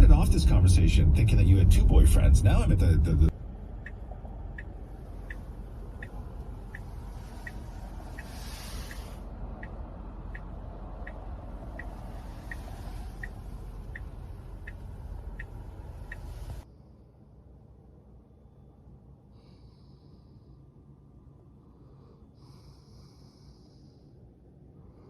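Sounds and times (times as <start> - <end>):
road noise inside car: 0.0 - 25.0
turn signal ticking: 1.6 - 16.6.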